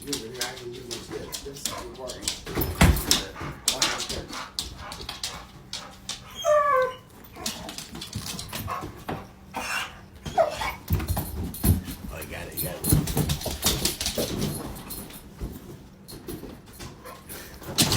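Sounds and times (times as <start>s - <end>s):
dog whining: 6.1s - 11.0s.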